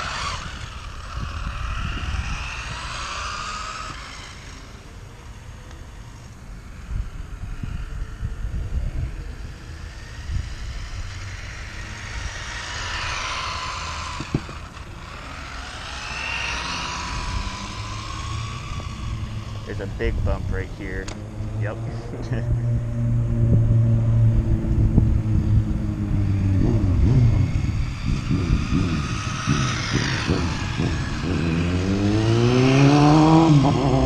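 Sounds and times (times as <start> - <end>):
electric motor whining: 0.0 - 34.0
low rumble: 16.8 - 32.8.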